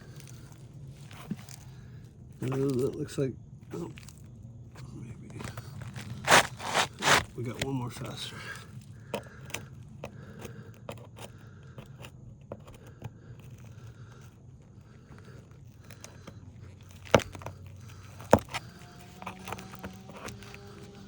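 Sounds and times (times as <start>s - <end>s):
pry bar scraping roof shingles: 4.8s - 21.0s.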